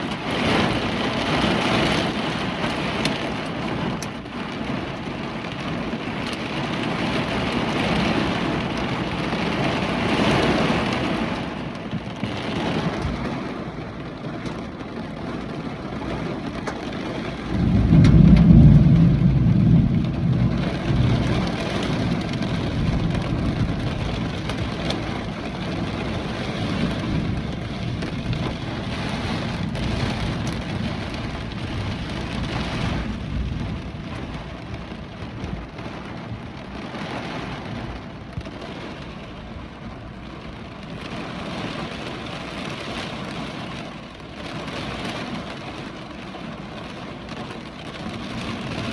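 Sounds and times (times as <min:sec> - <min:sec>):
heavy rain and wind: 0:00.0 - 0:48.9
low rumble: 0:16.4 - 0:36.8.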